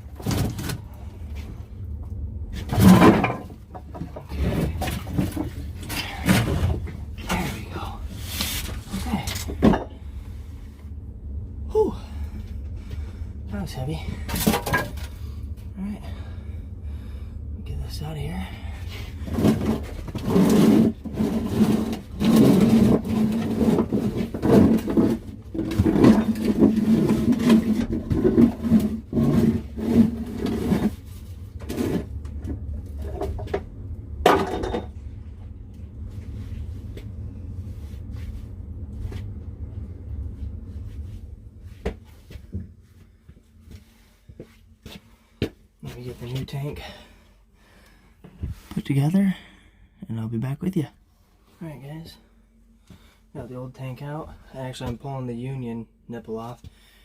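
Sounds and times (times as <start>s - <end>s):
steady low hum: 0.0s - 57.0s
metal tank scraping and knocking: 2.5s - 10.0s, 14.3s - 15.4s, 19.2s - 35.0s.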